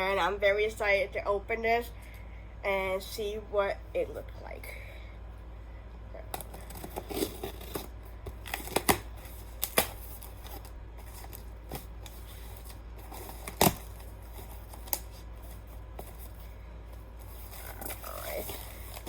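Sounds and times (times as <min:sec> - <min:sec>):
packaging clicks and snaps: 0:06.4 - 0:15.1.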